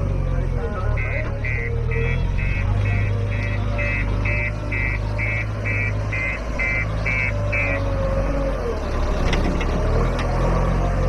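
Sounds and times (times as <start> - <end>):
diesel engine running: 0.0 - 11.0
reversing alarm beeping: 0.8 - 8.0.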